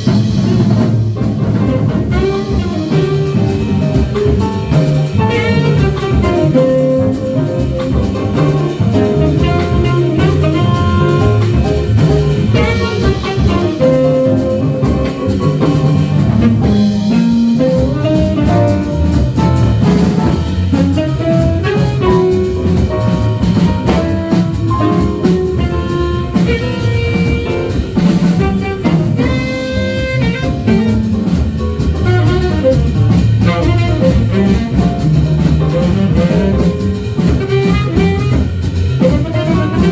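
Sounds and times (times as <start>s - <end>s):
jazz band playing: 0.0s - 39.9s.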